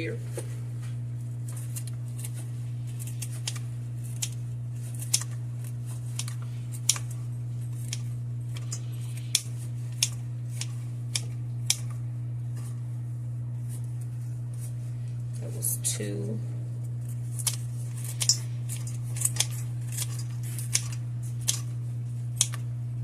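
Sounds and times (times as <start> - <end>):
steady low hum: 0.0 - 23.0
scissors snipping bacon: 1.7 - 7.1, 7.7 - 11.9, 17.3 - 22.6.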